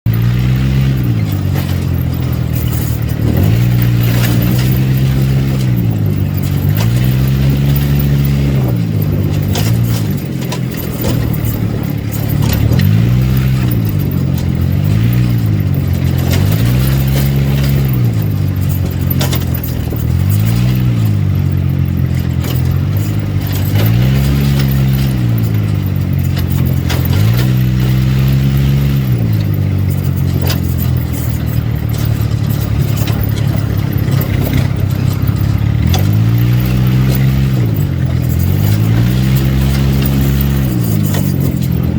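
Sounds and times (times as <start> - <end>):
atv engine revving under load: 0.0 - 41.9
machine rattling and clicking: 0.1 - 41.9.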